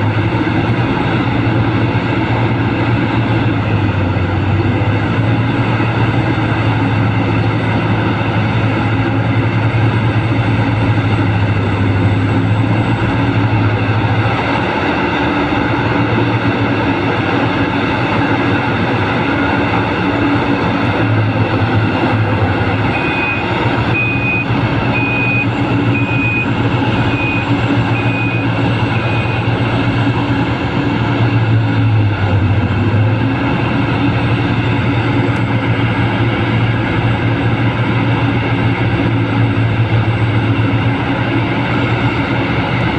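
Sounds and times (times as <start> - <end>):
heavy machinery diesel engines: 0.0 - 42.9
reversing alarm beeping: 20.9 - 30.4.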